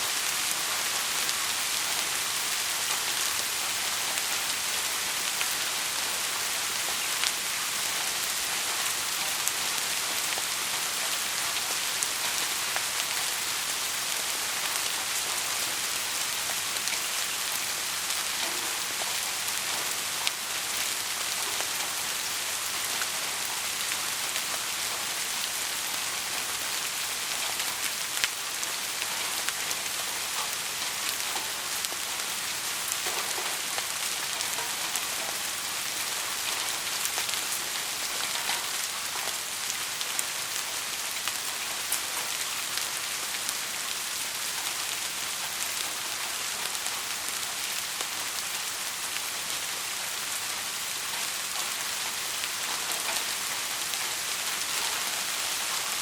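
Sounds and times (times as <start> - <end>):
heavy rain: 0.0 - 56.0
rain drop ticks: 6.2 - 22.3, 22.9 - 43.6.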